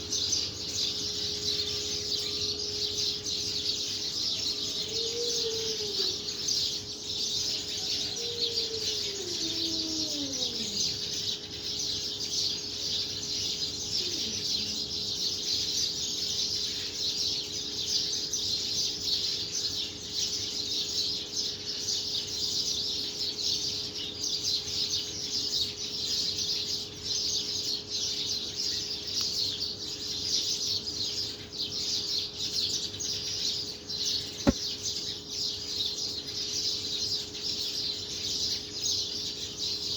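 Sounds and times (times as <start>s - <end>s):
small birds chirping: 0.0s - 39.9s
falling wail-like bird calls: 4.2s - 6.4s, 7.6s - 11.0s.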